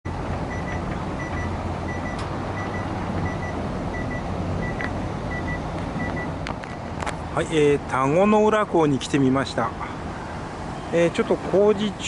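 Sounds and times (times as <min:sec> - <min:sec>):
vehicle engine rumble: 0:00.1 - 0:12.0
reversing alarm beeps: 0:00.5 - 0:06.3.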